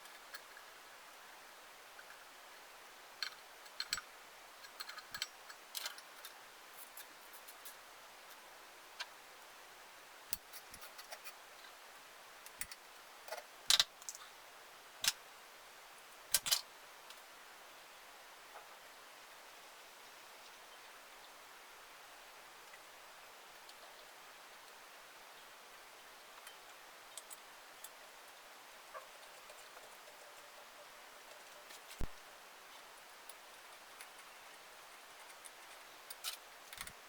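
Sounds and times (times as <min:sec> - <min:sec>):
faint steady hiss: 0:00.0 - 0:37.0
small tools clicking and knocking: 0:03.2 - 0:07.1, 0:12.5 - 0:14.3.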